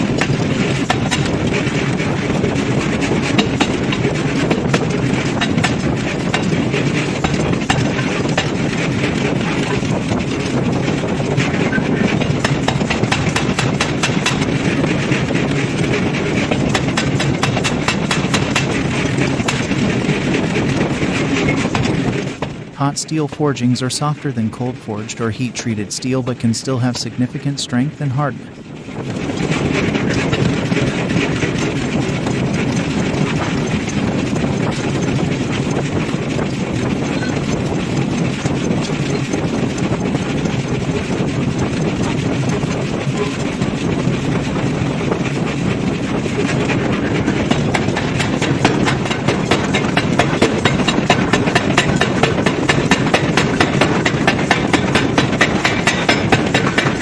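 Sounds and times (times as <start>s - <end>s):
industrial forging machinery: 0.0s - 23.4s, 27.8s - 57.0s
fast sharp knocks: 0.2s - 1.8s, 12.2s - 14.6s, 16.6s - 20.1s, 47.2s - 57.0s.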